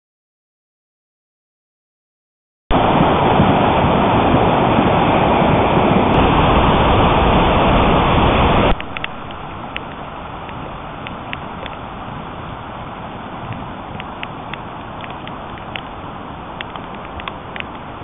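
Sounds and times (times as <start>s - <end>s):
floodwater rushing: 2.7s - 18.0s
faint clicks: 16.6s - 17.8s.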